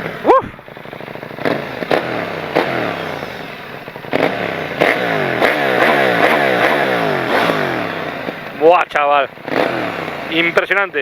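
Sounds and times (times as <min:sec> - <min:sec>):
exhaust cracks: 0:00.0 - 0:11.0
motorcycle engine revving: 0:00.0 - 0:11.0.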